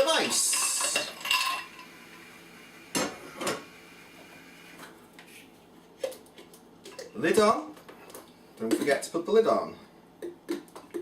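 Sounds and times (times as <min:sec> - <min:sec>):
ice cubes clinking into blender jar: 0:00.2 - 0:01.7.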